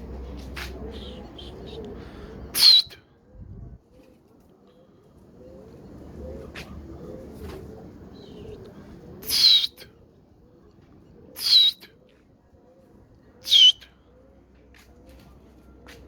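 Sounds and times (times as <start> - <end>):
pigeons cooing: 0.0 - 15.5
harsh bird calls: 0.4 - 2.9, 6.3 - 9.8, 13.4 - 13.9.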